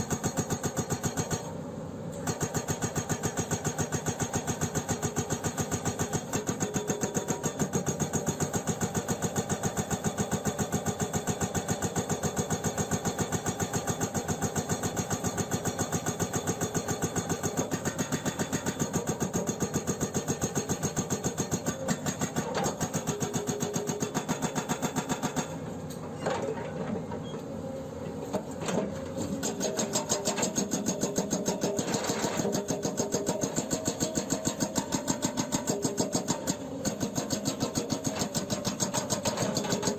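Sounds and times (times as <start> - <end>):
hydraulic breaker hammering rock: 0.0 - 1.5, 2.2 - 25.6, 28.8 - 39.9.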